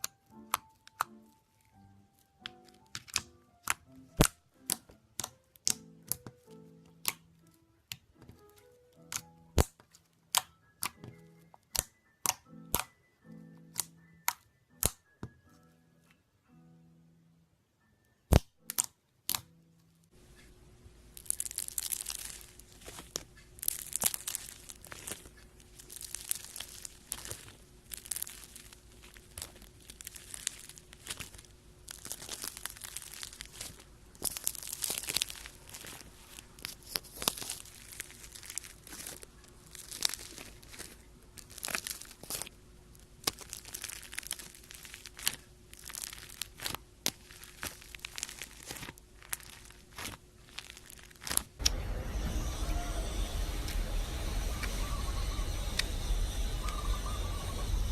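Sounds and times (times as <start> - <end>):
slime squished by hand: 21.1 - 51.7.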